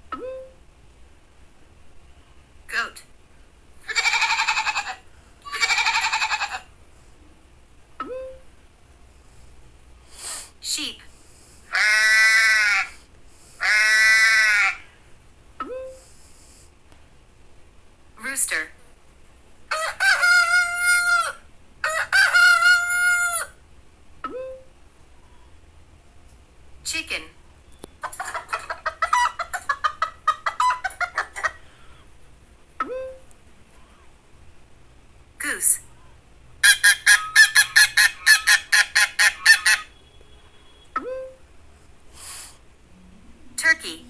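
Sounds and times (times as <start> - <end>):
rooster crowing: 3.9 - 6.7, 19.7 - 23.6.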